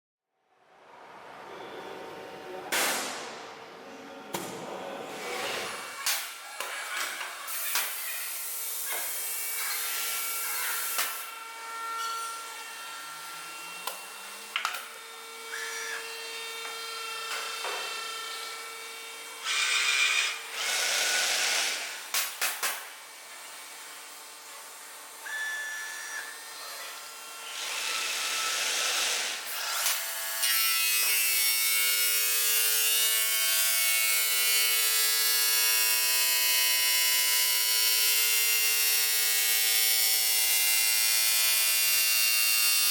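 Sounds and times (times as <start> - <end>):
machine motor whining: 5.1 - 22.1.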